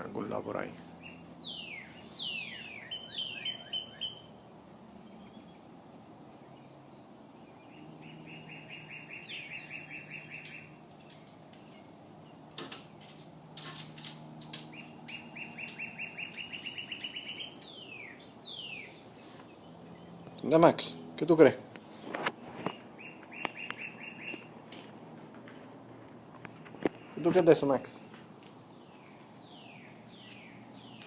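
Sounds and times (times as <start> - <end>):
cardinals singing: 0.1 - 31.0.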